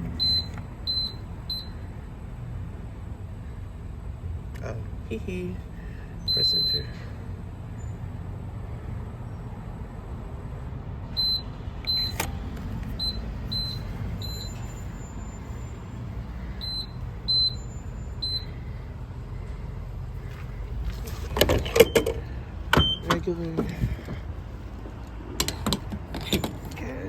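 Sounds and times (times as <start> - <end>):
steady low rumble: 0.0 - 21.4
keypad beeping: 0.1 - 1.8, 6.3 - 7.0, 11.2 - 15.1, 16.6 - 18.6, 21.6 - 22.2, 22.8 - 23.2.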